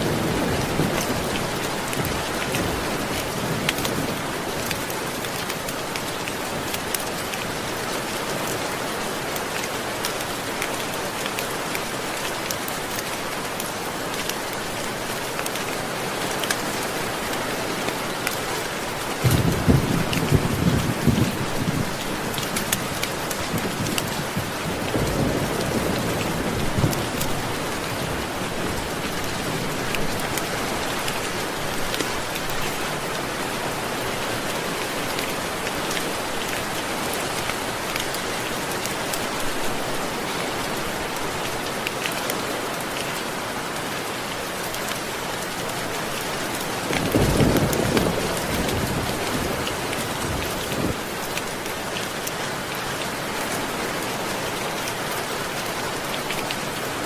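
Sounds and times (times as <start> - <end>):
heavy rain falling: 0.0 - 57.0
thunder rumbling: 19.2 - 22.0, 47.0 - 51.0.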